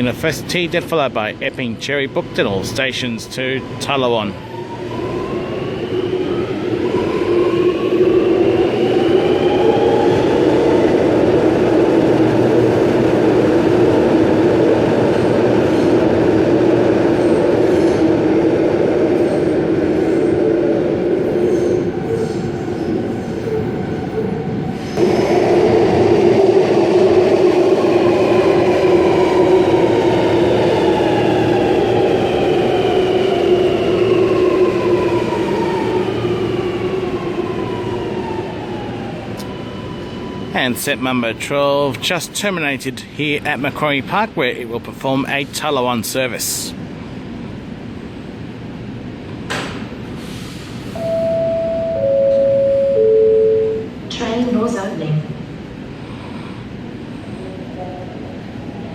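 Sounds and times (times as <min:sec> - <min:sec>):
train braking to a stop: 0:50.0 - 0:54.2.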